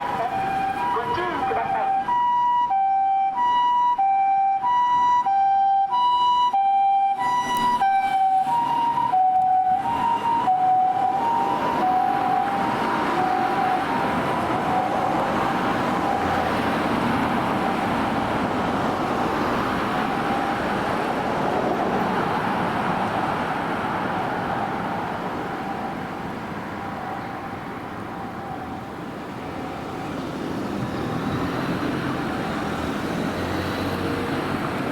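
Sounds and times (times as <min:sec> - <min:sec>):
ambulance two-tone siren: 0:00.0 - 0:18.6, 0:19.6 - 0:21.0, 0:24.1 - 0:29.8
traffic noise: 0:00.0 - 0:34.9.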